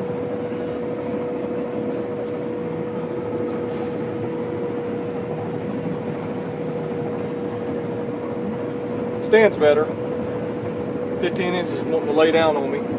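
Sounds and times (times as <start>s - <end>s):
combine harvester running: 0.0s - 12.9s.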